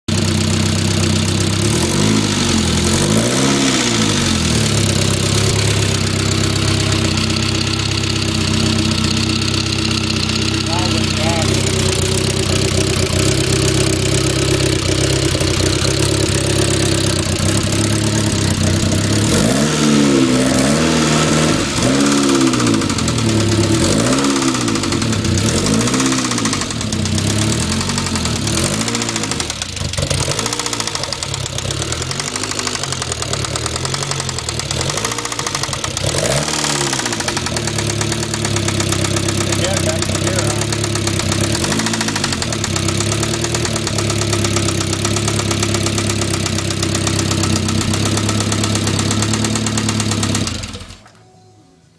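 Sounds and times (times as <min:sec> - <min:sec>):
car engine idling and revving: 0:00.0 - 0:51.1
engine ticking: 0:00.0 - 0:51.2.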